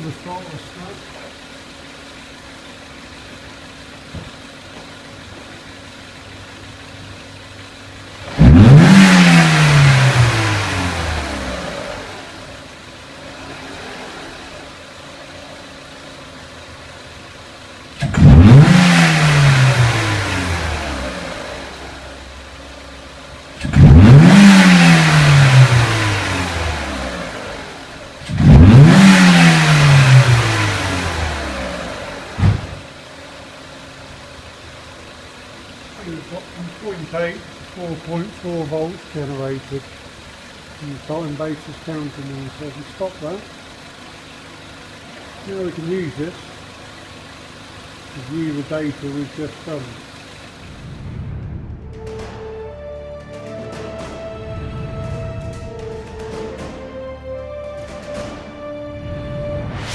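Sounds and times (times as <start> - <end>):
car engine idling: 0.0 - 59.9
engine revving: 7.7 - 33.0, 48.2 - 59.9.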